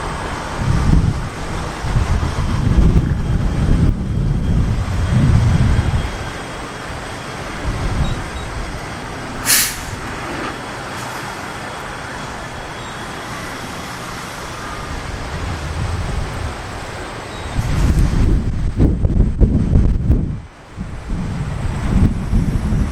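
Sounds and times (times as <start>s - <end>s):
vehicle rumble: 0.0s - 22.9s
short sharp hiss: 9.4s - 11.4s.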